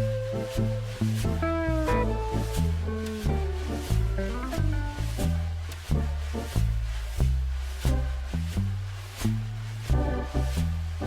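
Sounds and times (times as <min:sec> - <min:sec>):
electronic instrumental music: 0:00.0 - 0:08.6.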